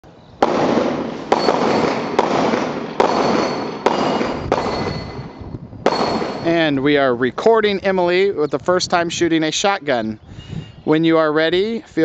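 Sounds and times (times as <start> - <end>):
gunshots with echo: 0.4 - 6.7.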